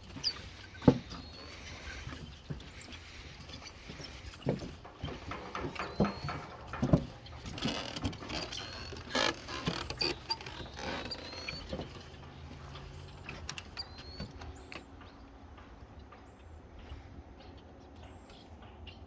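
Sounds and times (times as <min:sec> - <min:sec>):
knocks and creaks: 0:00.0 - 0:16.3
rising bird chirps: 0:10.1 - 0:14.8.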